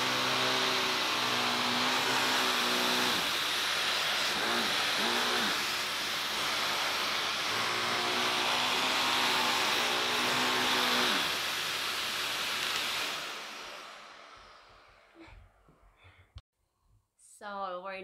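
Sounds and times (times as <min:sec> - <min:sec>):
vacuum cleaner running: 0:00.0 - 0:15.5.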